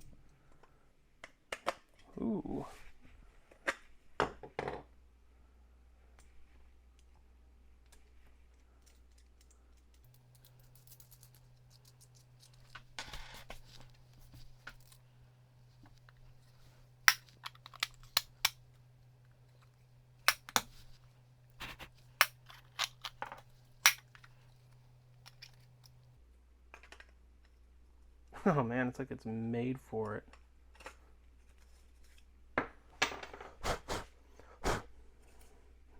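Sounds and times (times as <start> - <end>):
connector parts clicking: 10.0 - 26.1.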